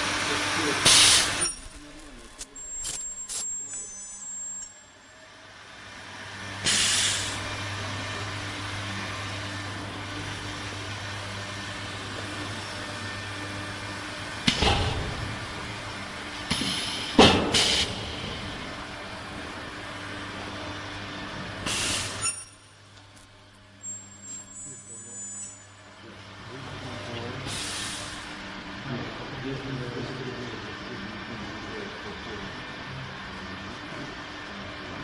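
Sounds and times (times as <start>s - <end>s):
welding machine humming: 0.0s - 25.9s
machine knocks: 14.4s - 15.6s, 16.5s - 18.2s.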